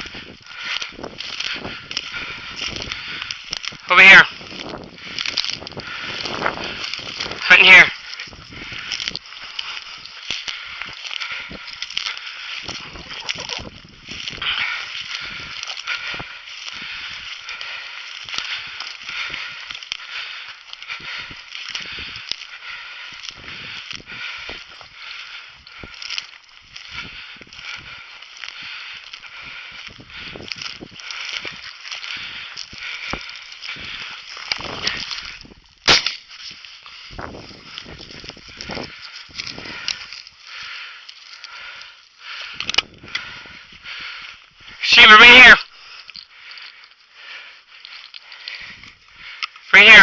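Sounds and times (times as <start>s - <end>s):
dry grass rustling and crackling: 0.0s - 50.0s
shotgun shot: 35.9s - 36.2s.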